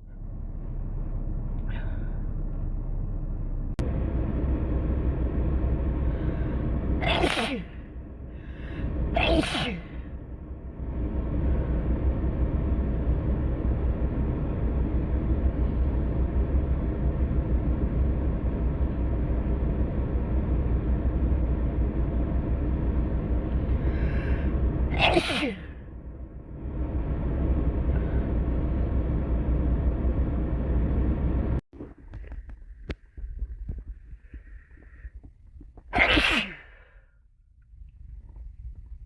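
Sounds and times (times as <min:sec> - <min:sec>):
steady low rumble: 0:00.0 - 0:39.0
person sneezing: 0:07.0 - 0:07.8, 0:09.2 - 0:10.0, 0:24.9 - 0:25.7, 0:35.9 - 0:36.8.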